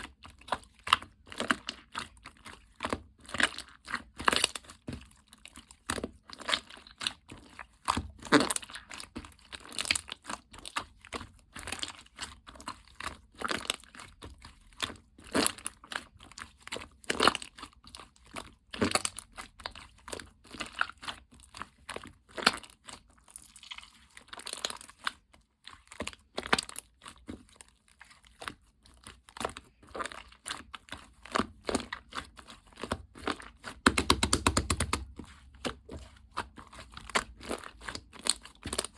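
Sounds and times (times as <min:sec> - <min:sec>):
hands handling slime: 0:00.0 - 0:38.9
slime crackling and popping: 0:28.3 - 0:38.9.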